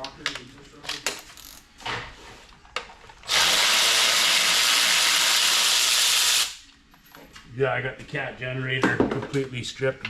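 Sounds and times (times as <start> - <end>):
power tool running: 3.3 - 6.6.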